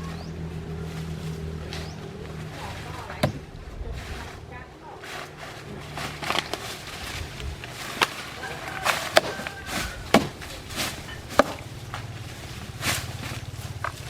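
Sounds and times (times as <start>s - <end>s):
chainsaw idling: 5.0s - 14.0s
axe chopping wood: 7.9s - 12.1s.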